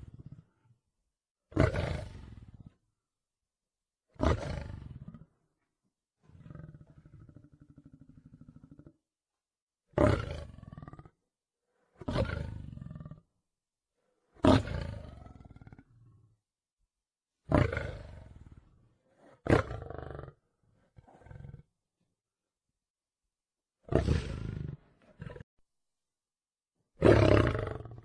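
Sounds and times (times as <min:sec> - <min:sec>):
big cat roaring: 0:01.5 - 0:02.7, 0:04.2 - 0:05.4, 0:06.3 - 0:09.0, 0:09.9 - 0:11.2, 0:11.9 - 0:13.2, 0:14.4 - 0:16.2, 0:17.5 - 0:21.7, 0:23.8 - 0:25.4, 0:27.0 - 0:28.0.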